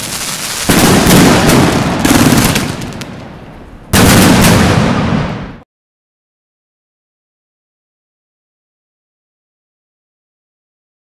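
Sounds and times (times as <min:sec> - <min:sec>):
loud blasts with rumbling decay: 0:00.0 - 0:05.6.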